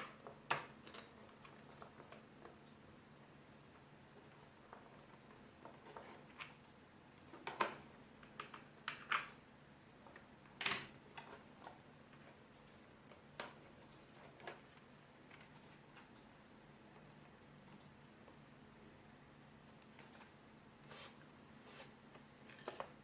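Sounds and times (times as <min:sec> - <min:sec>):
plastic keyboard clicks: 0:07.4 - 0:09.4.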